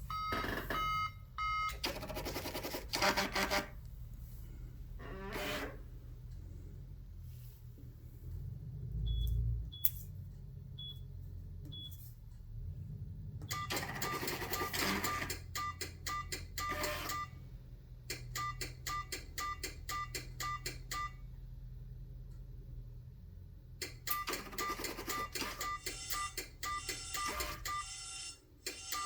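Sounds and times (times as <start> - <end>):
steady low hum: 0.0 - 13.4
printer mechanical clatter: 1.7 - 3.8, 13.5 - 17.2, 23.8 - 27.8.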